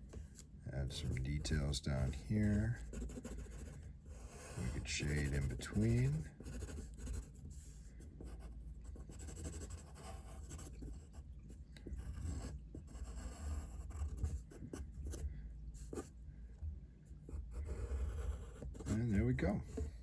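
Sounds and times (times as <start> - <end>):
steady low hum: 0.0 - 20.0
drawing tool scratching on paper: 0.8 - 11.2, 11.8 - 16.1, 17.3 - 20.0.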